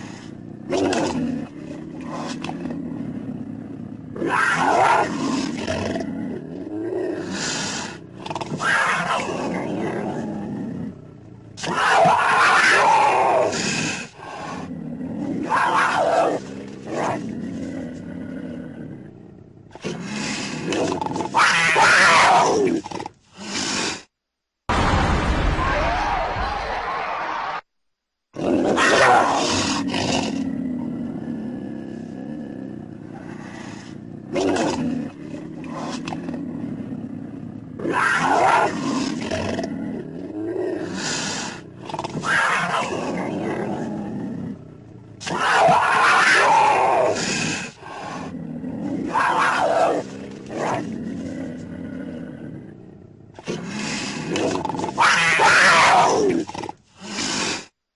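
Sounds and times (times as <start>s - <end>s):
creature roaring and screeching: 4.2s - 5.7s, 11.6s - 13.8s, 15.2s - 17.2s, 21.2s - 22.8s, 37.8s - 44.4s, 45.2s - 51.4s, 53.5s - 56.5s.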